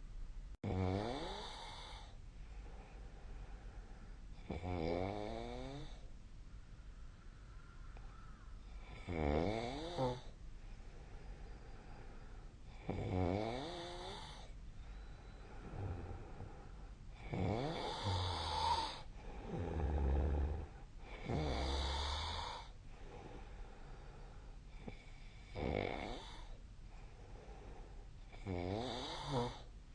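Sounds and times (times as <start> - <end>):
person snoring: 0.6 - 2.2, 4.4 - 6.1, 8.8 - 10.3, 12.7 - 14.5, 15.4 - 26.6, 28.3 - 29.7.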